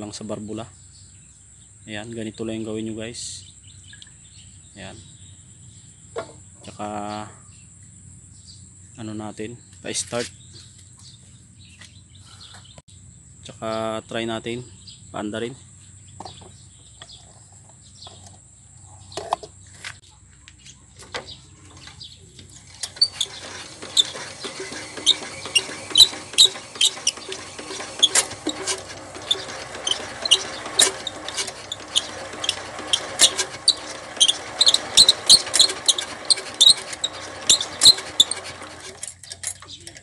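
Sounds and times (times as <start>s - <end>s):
diesel engine cranking: 20.9s - 40.0s
fast sharp clicks and clatter: 22.6s - 40.0s.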